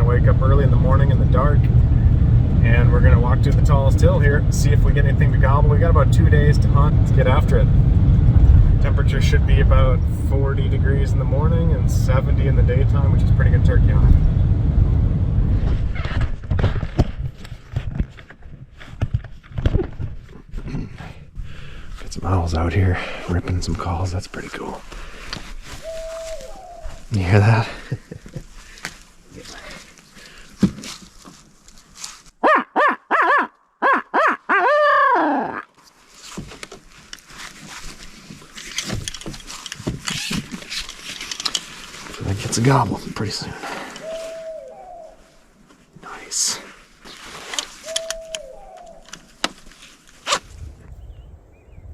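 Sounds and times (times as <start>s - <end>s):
heavy low rumble: 0.0s - 17.3s, 50.3s - 51.9s
owl hooting: 25.7s - 27.1s, 32.4s - 35.7s, 43.6s - 45.4s, 47.6s - 49.3s.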